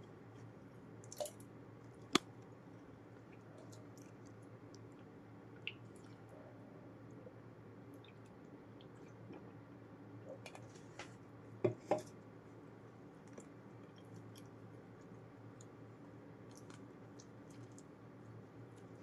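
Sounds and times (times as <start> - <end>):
faint steady hum: 0.0 - 19.0
person chewing with wet clicks: 0.2 - 6.4, 7.9 - 9.6, 13.1 - 19.0.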